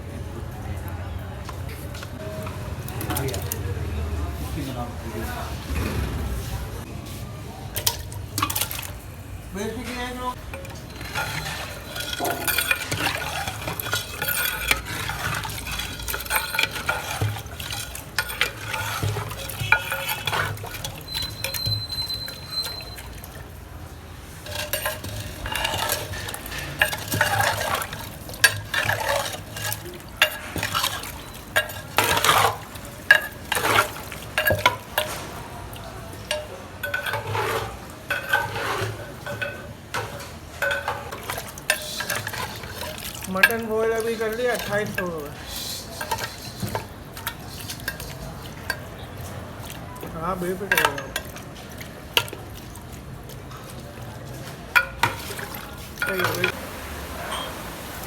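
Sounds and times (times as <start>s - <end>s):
metal ladle scraping a pot: 10.3s - 23.6s, 24.2s - 53.9s, 54.8s - 56.6s.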